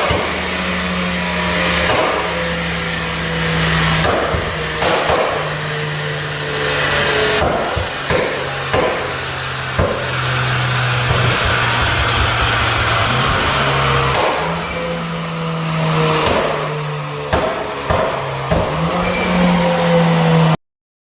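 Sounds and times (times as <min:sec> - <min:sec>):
car engine at steady revs: 0:00.0 - 0:20.6
exhaust pops: 0:07.4 - 0:15.0.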